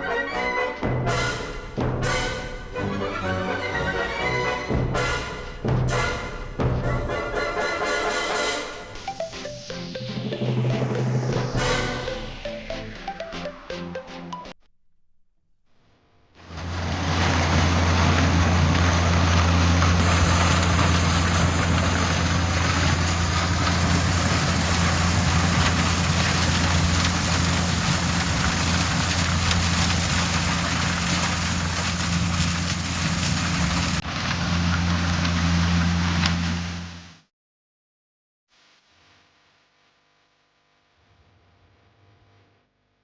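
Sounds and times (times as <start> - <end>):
harvester engine humming: 0.0 - 9.2, 20.0 - 34.0
machinery clatter: 17.2 - 34.0.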